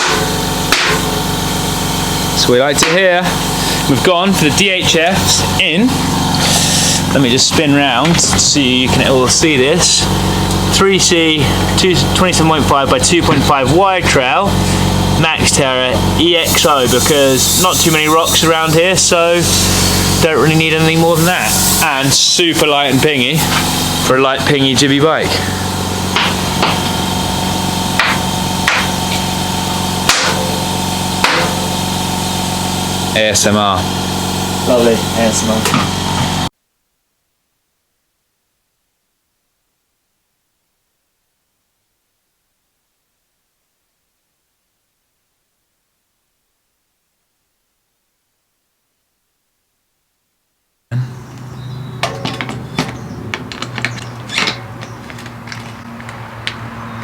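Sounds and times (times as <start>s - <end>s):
sharp knocks: 0.0s - 1.2s, 26.1s - 27.0s, 28.0s - 29.2s, 30.1s - 31.8s
low machine hum: 0.0s - 36.5s.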